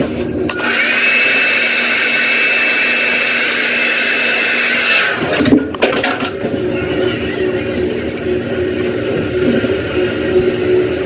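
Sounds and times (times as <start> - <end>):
hair dryer running: 0.5 - 5.5.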